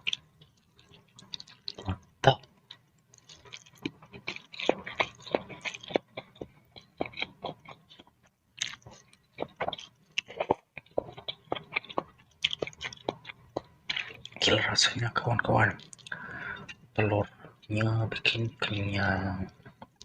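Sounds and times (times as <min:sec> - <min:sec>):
chewing and slurping noodles: 0:03.2 - 0:14.4.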